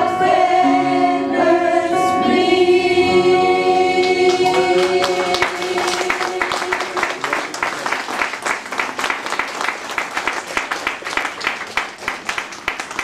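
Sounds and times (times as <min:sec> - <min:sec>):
audience applauding: 0:04.0 - 0:13.0.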